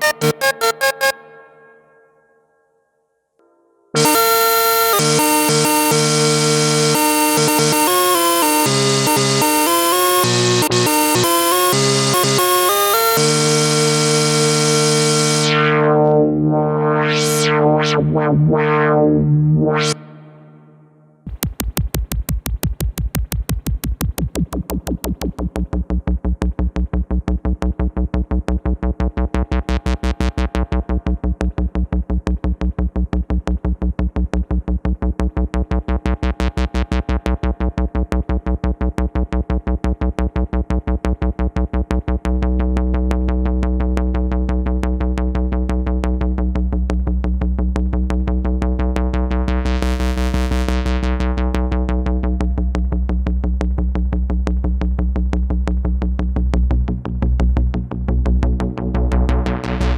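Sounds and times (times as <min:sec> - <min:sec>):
synthesizer pulsing notes: 0:00.0 - 0:02.6, 0:03.4 - 0:59.9
deep bass tone: 0:13.2 - 0:59.9.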